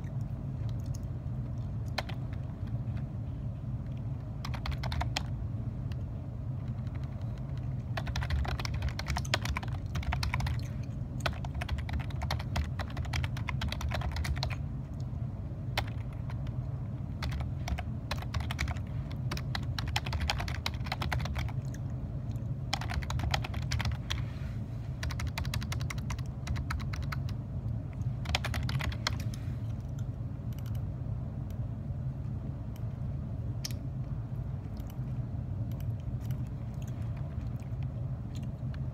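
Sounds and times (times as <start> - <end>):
keyboard typing clicks: 0.0 - 3.1, 3.9 - 5.3, 6.6 - 15.1, 17.2 - 21.8, 22.7 - 24.2, 25.0 - 30.8, 35.7 - 38.8
steady low hum: 0.0 - 38.9.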